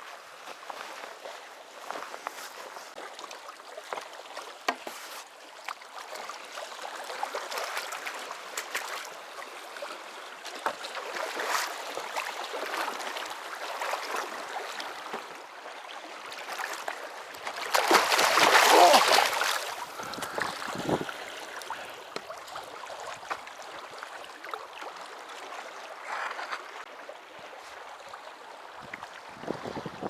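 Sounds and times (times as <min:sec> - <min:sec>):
water sloshing and splashing: 0:16.1 - 0:27.5.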